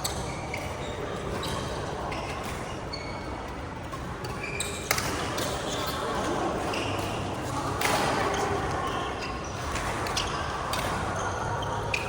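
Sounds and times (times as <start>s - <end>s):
shoe squeaks on court floor: 0.0s - 3.3s, 4.2s - 7.2s
sports hall background noise: 0.0s - 12.0s.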